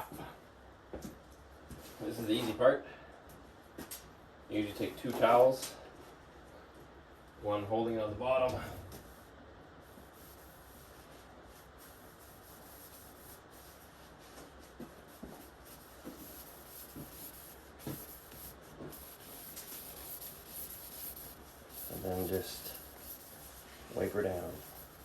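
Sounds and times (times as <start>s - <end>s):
cloth rubbing on wooden handle: 9.0s - 25.0s.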